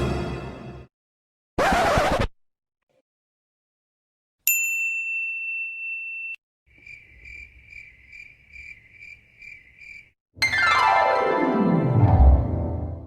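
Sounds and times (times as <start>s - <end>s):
cricket chirping: 6.7s - 10.1s.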